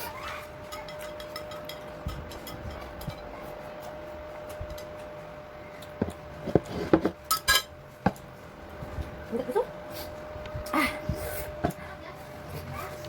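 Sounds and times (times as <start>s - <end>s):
cutlery and dishes clinking: 0.6s - 3.3s, 6.6s - 7.7s.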